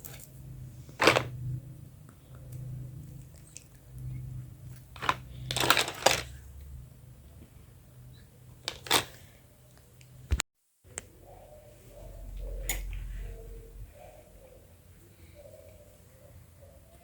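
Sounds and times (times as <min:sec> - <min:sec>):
plastic toy pieces being handled: 0:01.0 - 0:01.3, 0:04.8 - 0:06.4, 0:08.6 - 0:09.2
plastic clatter: 0:01.0 - 0:01.4, 0:05.0 - 0:06.4, 0:08.6 - 0:09.2.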